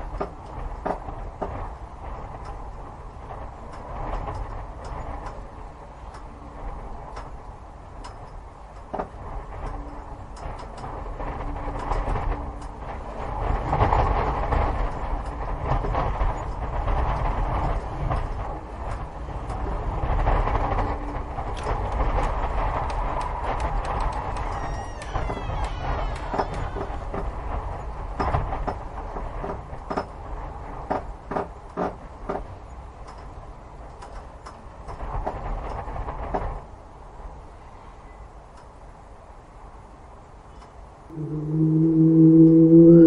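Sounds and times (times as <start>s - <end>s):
scattered clicks and clatters: 0.0s - 36.8s
low rumbling: 23.5s - 28.2s, 41.1s - 43.0s.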